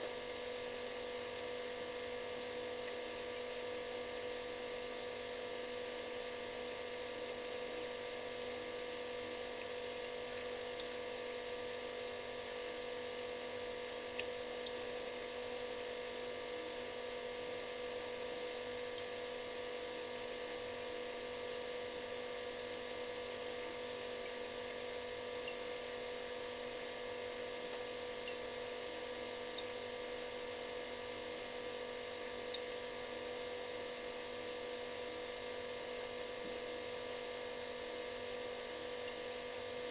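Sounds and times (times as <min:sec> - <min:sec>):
refrigerator buzzing hum: 0:00.0 - 0:39.9.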